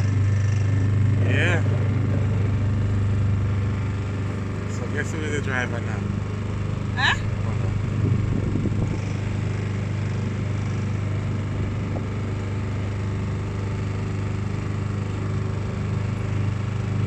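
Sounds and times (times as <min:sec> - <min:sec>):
motor boat engine humming: 0:00.0 - 0:17.0.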